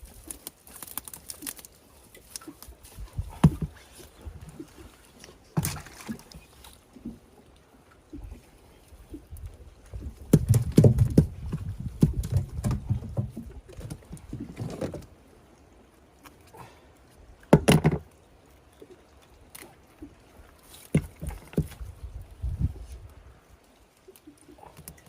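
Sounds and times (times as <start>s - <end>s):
water rumbling against hull: 2.1s - 18.4s
knocks and clatter on boat: 3.1s - 4.4s, 9.9s - 15.1s, 17.5s - 18.1s, 20.8s - 22.0s.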